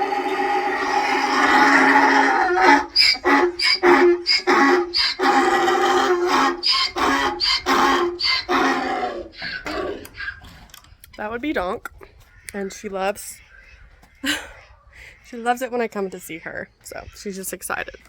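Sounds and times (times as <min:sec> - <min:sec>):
donkey braying: 0:00.0 - 0:10.8.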